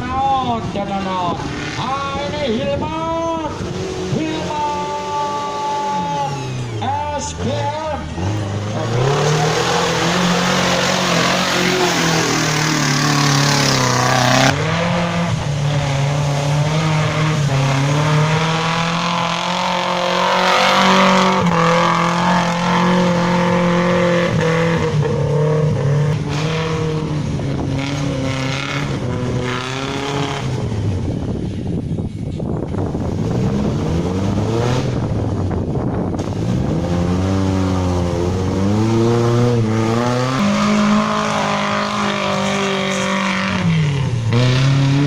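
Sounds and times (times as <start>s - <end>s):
noisy rush: 0.0s - 45.0s
off-road engine revving: 0.0s - 45.0s.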